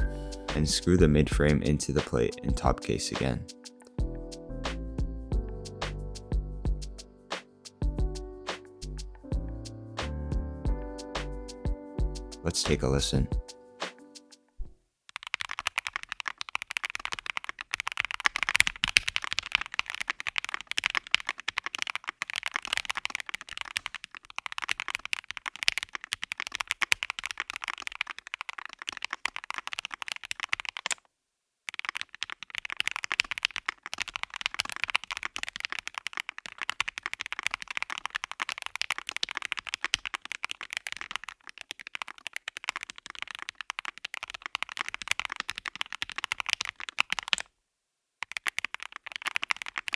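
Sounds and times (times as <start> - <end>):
fast mechanical keyboard typing: 15.1 - 31.0, 31.7 - 47.5, 48.2 - 49.9.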